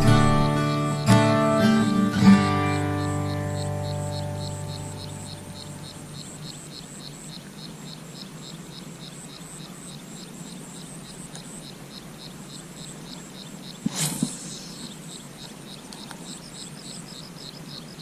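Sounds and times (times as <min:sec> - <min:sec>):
guitar music: 0:00.0 - 0:06.2
faint background hiss: 0:00.0 - 0:18.0
insect chirping: 0:00.0 - 0:18.0.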